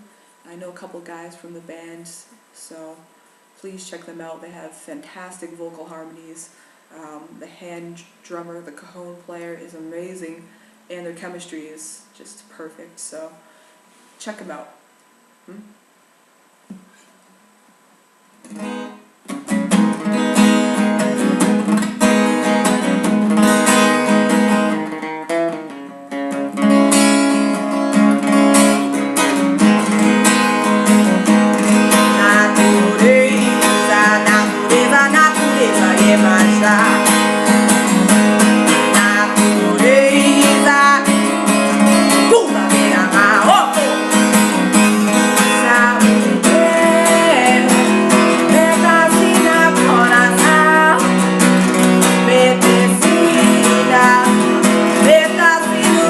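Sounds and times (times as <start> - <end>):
acoustic guitar strummed and picked: 18.4 - 56.0.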